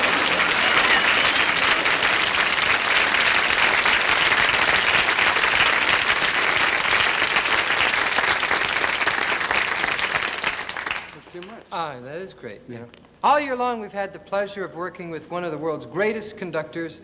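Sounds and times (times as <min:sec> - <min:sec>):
audience applauding: 0:00.0 - 0:11.6.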